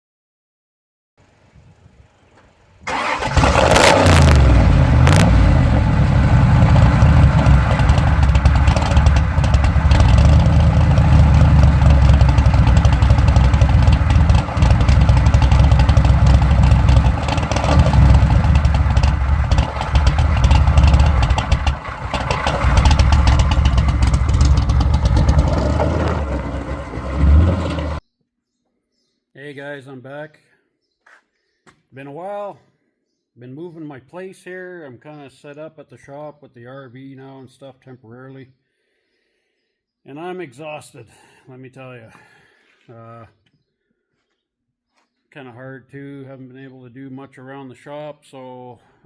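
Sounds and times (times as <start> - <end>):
car engine starting and revving: 2.8 - 28.0.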